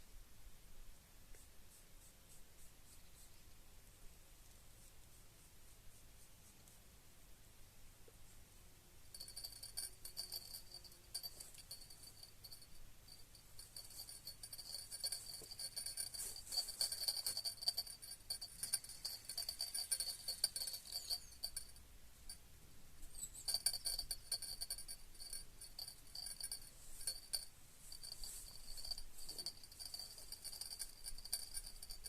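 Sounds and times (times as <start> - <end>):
cricket-like insect chirping: 9.2 - 21.8, 23.0 - 32.0.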